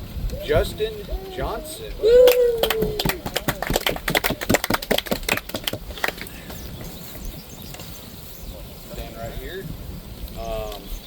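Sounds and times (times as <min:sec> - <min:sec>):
people clapping: 0:02.0 - 0:06.7.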